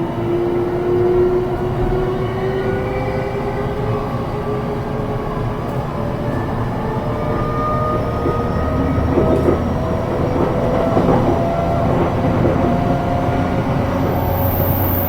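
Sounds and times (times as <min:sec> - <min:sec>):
train wheels rumbling on rail: 0:00.0 - 0:15.0
faint whining tones: 0:13.8 - 0:15.0.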